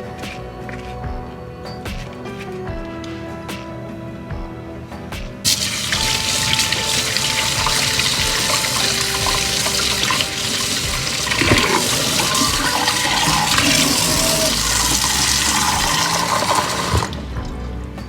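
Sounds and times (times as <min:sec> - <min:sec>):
tap running into a sink: 0:05.5 - 0:17.2
water splashing: 0:05.5 - 0:17.4.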